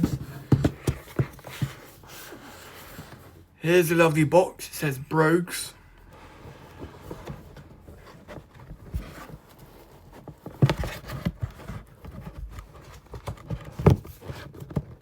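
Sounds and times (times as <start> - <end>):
cardboard box scuffing and rustling: 0.0 - 3.5, 6.2 - 15.0.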